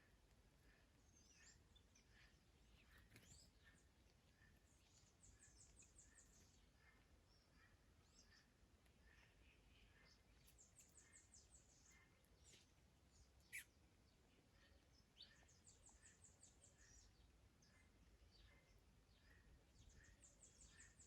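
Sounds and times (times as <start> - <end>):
small birds singing: 0.0 - 21.0
soft low bird chirps: 0.0 - 21.0.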